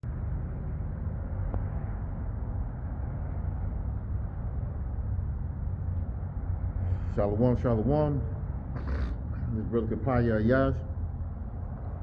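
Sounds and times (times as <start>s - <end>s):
low outdoor rumble: 0.0s - 12.0s.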